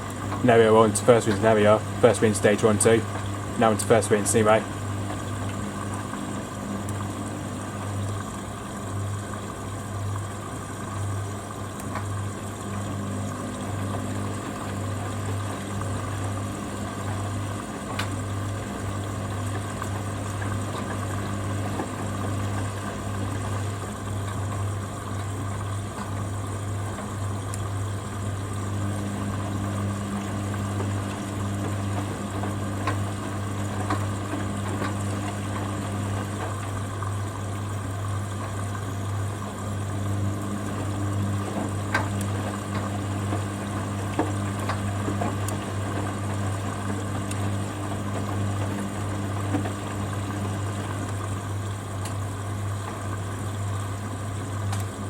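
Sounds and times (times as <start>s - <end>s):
drain pump humming: 0.0s - 55.0s
water running: 0.0s - 55.0s.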